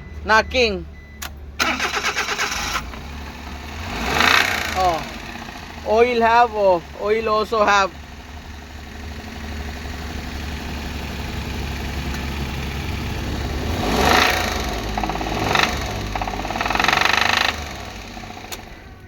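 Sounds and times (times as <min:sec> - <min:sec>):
engine running with knock: 0:07.7 - 0:19.0.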